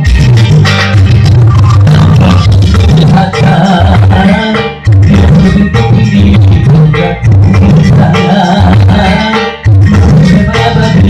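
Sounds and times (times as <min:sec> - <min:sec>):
dangdut song over sound system: 0:00.0 - 0:11.0
heavy bass notes: 0:00.0 - 0:11.0.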